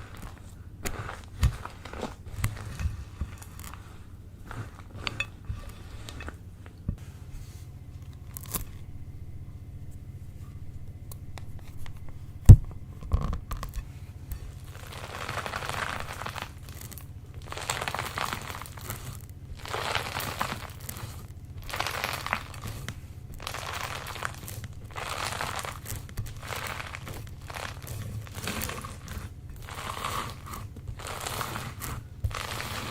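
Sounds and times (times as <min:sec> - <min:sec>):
slime squeezed in plastic bags: 0:14.6 - 0:32.9.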